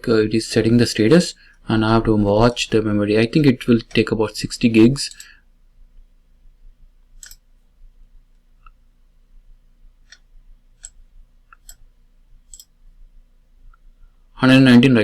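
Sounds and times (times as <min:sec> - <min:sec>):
faint low hum: 0:00.0 - 0:15.0
computer mouse clicks: 0:05.1 - 0:05.4, 0:07.2 - 0:07.5, 0:10.0 - 0:12.8.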